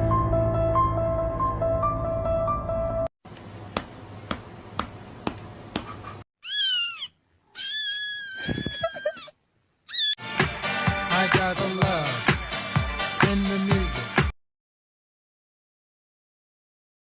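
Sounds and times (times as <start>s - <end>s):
music: 0.0s - 3.1s, 10.2s - 14.4s
cat meowing: 6.4s - 9.3s, 9.9s - 10.2s.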